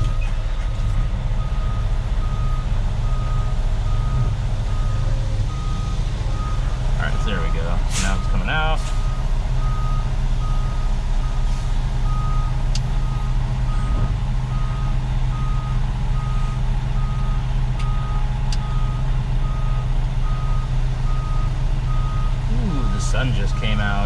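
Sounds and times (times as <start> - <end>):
diesel engine drone: 0.0 - 24.0
reversing alarm beeping: 1.4 - 11.4, 12.0 - 24.0.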